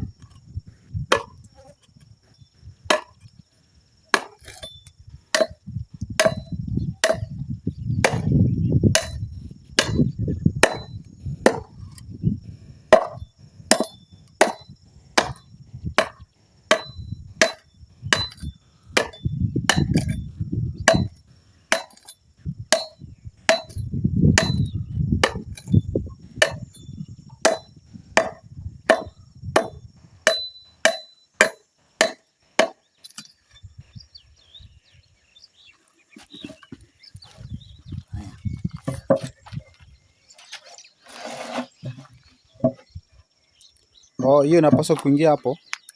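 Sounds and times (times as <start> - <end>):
wood chopping strokes: 2.9 - 3.3, 4.1 - 4.6, 6.2 - 7.4, 8.0 - 8.4, 9.8 - 10.9, 11.5 - 11.8, 12.9 - 15.4, 16.0 - 20.2, 20.9 - 21.1, 21.7 - 22.1, 22.7 - 23.8, 25.2 - 25.7, 26.4 - 26.7, 27.4 - 33.4, 40.4 - 42.8.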